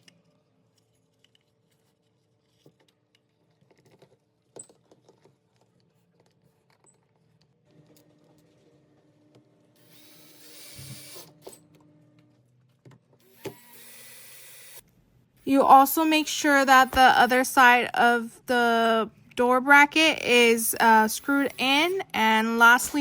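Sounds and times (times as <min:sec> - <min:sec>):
power drill driving screws: 0:09.8 - 0:11.6, 0:13.2 - 0:14.8, 0:20.8 - 0:22.1.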